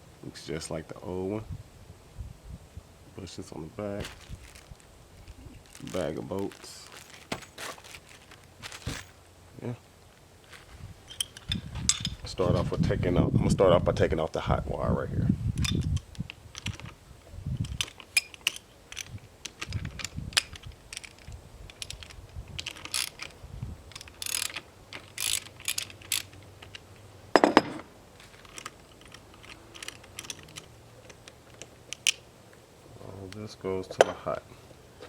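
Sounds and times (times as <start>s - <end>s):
socket ratchet clicking: 17.6s - 26.9s, 28.5s - 32.2s.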